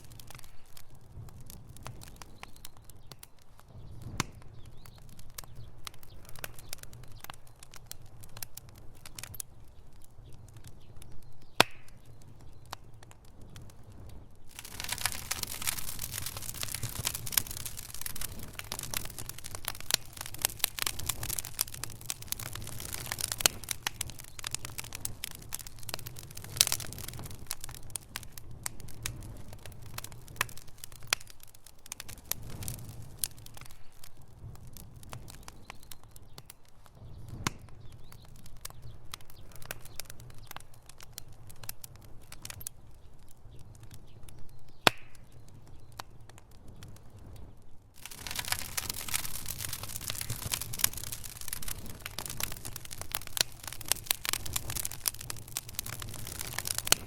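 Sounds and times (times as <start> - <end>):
fire crackling and popping: 0.0 - 57.0.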